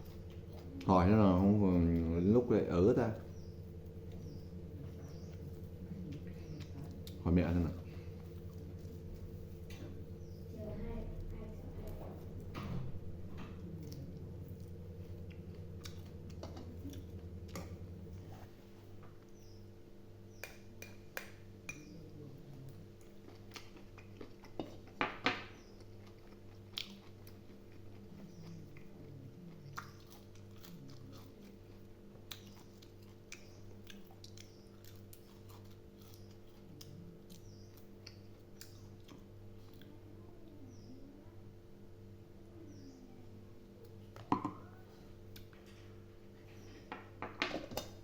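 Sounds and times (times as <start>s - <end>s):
pulsing low hum: 0.0s - 20.1s
wet chewing and biting: 13.8s - 17.9s, 25.6s - 39.9s.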